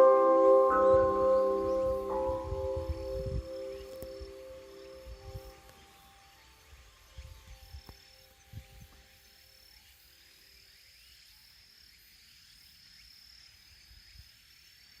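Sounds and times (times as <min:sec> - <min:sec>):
steady high-pitched tone: 0:00.0 - 0:08.8
faint outdoor ambience: 0:00.0 - 0:15.0.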